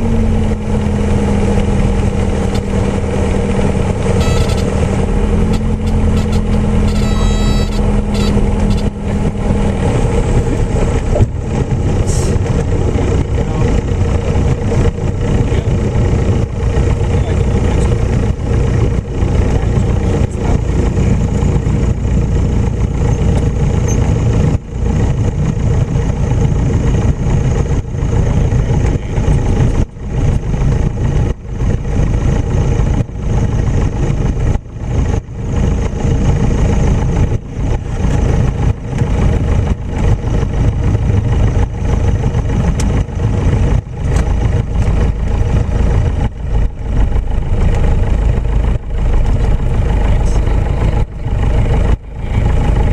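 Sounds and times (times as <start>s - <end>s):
light aircraft engine running: 0.0s - 52.9s.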